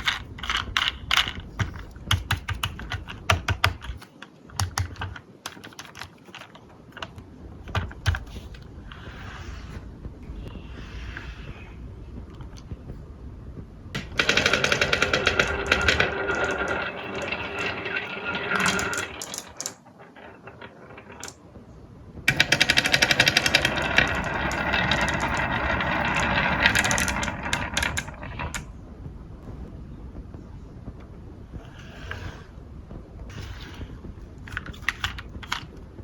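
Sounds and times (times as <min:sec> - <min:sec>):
marbles rattling down a track: 0:14.0 - 0:21.4, 0:22.3 - 0:28.7.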